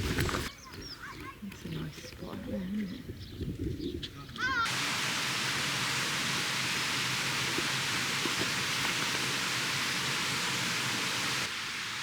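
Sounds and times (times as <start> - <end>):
stream water rushing: 4.7 - 12.0.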